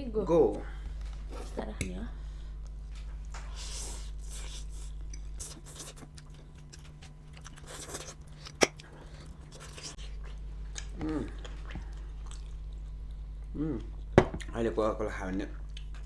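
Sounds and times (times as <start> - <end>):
steady low hum: 0.0 - 16.0
slurping and chewing: 3.3 - 13.2.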